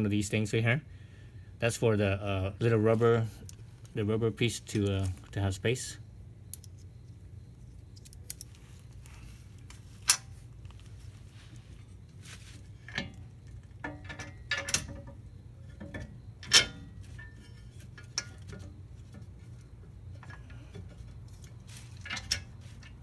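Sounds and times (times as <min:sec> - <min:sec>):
steady low hum: 0:00.0 - 0:23.0
metal tools clinking: 0:13.9 - 0:15.1.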